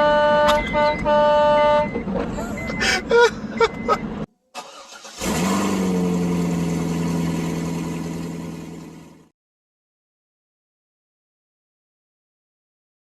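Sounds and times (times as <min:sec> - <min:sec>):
air horn blast: 0:00.0 - 0:01.9.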